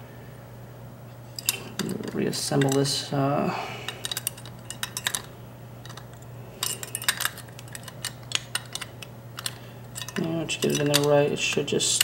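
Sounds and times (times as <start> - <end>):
metal doorknob parts clicking: 1.4 - 2.9, 4.0 - 12.0.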